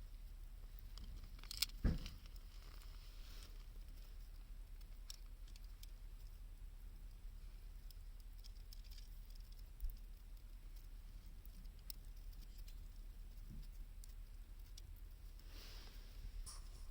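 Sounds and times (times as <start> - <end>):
low steady rumble: 0.0 - 16.9
dull thump: 1.8 - 2.2.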